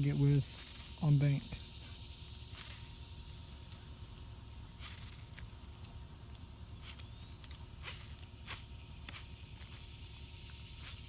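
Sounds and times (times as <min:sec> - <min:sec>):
insect hum: 0:00.0 - 0:11.0
small irregular clicks: 0:04.8 - 0:10.6.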